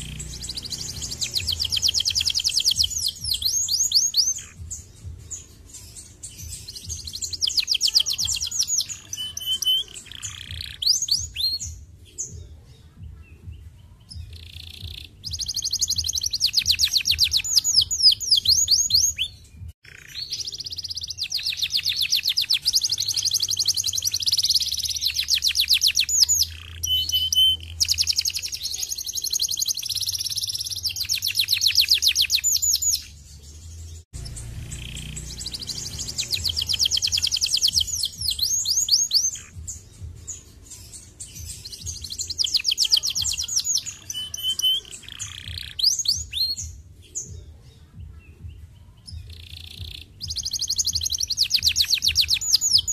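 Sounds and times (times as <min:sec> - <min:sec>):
canary singing rapid trills: 0:00.0 - 0:12.3, 0:14.0 - 0:46.8, 0:49.1 - 0:52.9.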